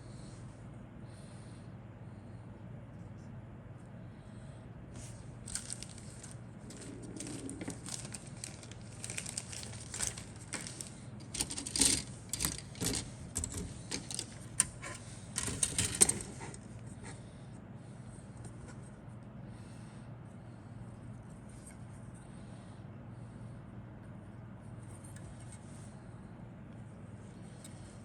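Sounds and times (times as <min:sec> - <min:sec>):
steady low hum: 0:00.0 - 0:28.0
packaging rustling: 0:05.0 - 0:16.7
plastic parts clicking and rattling: 0:05.5 - 0:16.6.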